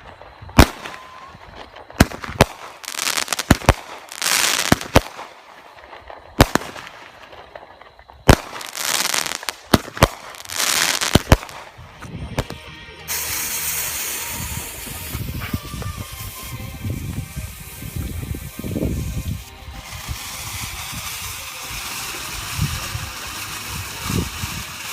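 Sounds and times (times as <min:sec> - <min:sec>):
fireworks bangs: 0:00.0 - 0:24.9
fireworks crackling hiss: 0:00.0 - 0:24.9.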